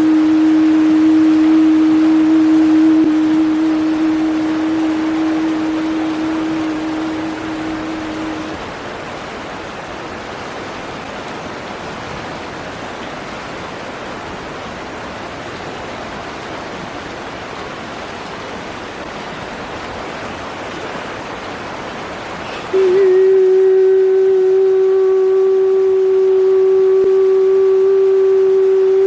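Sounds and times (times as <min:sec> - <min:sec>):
loud held tone: 0:00.0 - 0:08.6
steady rushing noise: 0:00.0 - 0:23.0.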